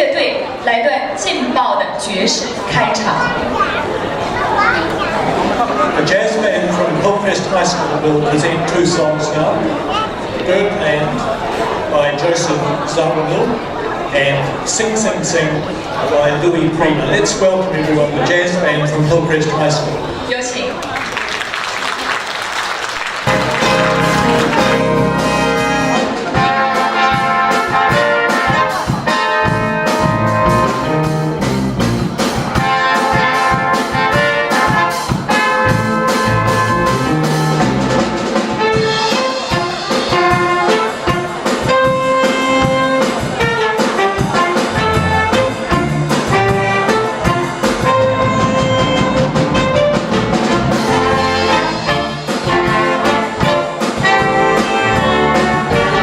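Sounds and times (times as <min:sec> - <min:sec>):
drums: 0:00.0 - 0:20.3, 0:21.0 - 0:56.0
trumpets: 0:23.1 - 0:56.0
bass: 0:23.2 - 0:43.6, 0:44.2 - 0:56.0
trombones: 0:23.2 - 0:56.0
saxophones: 0:23.3 - 0:31.4, 0:38.6 - 0:50.0, 0:50.7 - 0:56.0.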